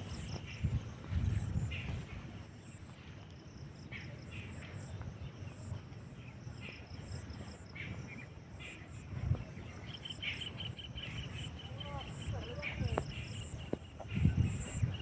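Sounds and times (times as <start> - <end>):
birds chirping: 0.0 - 15.0
insects chirping: 0.0 - 15.0.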